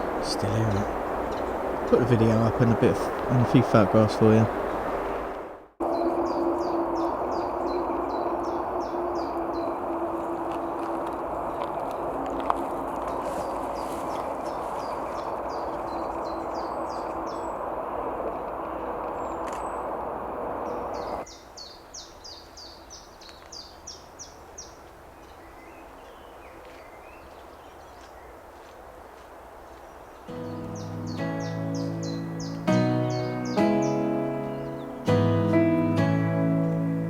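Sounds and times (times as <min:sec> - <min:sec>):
chiffchaff singing: 0:30.3 - 0:37.0.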